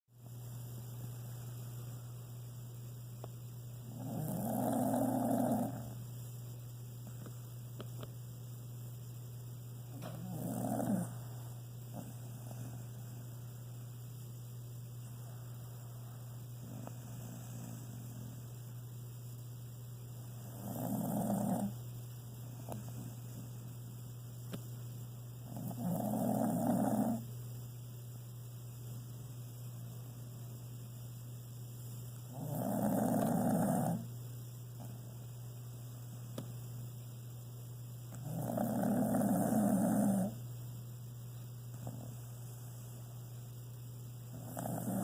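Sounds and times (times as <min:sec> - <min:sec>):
steady low hum: 0:00.1 - 0:45.0
snoring: 0:03.9 - 0:06.0, 0:10.0 - 0:13.0, 0:16.6 - 0:18.4, 0:20.4 - 0:21.8, 0:25.4 - 0:27.3, 0:32.3 - 0:34.1, 0:38.1 - 0:40.4, 0:41.8 - 0:42.2, 0:44.3 - 0:45.0.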